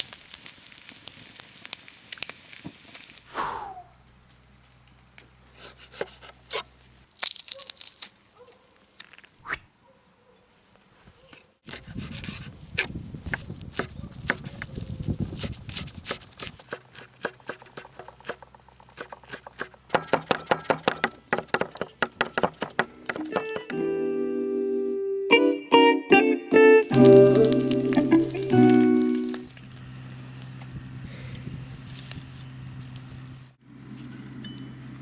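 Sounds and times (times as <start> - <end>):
tearing: 5.6 - 9.6, 11.6 - 18.4, 26.8 - 30.6.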